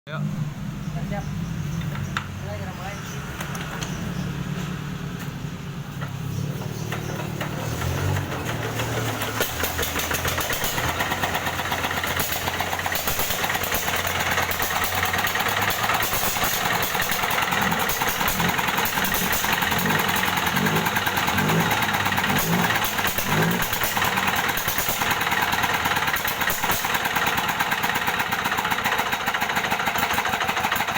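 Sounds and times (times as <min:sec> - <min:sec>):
rice milling machine running: 0:07.8 - 0:20.4.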